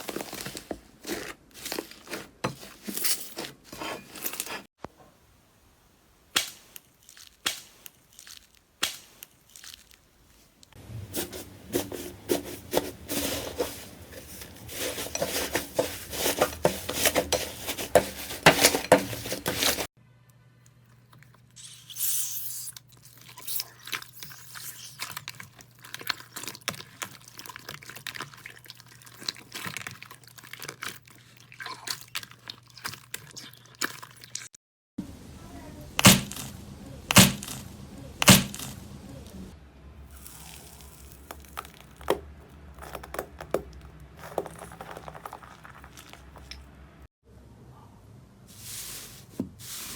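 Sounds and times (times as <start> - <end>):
slime crackling: 6.4 - 10.6.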